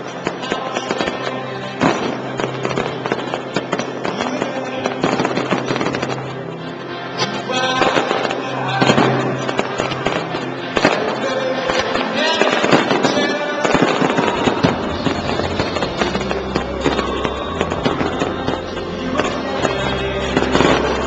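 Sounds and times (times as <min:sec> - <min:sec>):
fireworks bangs and crackles: 0:00.0 - 0:21.0
loud music: 0:00.0 - 0:21.0.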